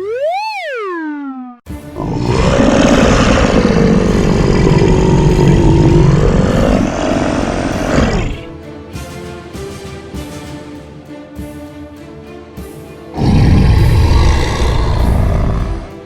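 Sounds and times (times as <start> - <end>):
loud rough rumbling: 2.0 - 8.5, 13.2 - 16.0.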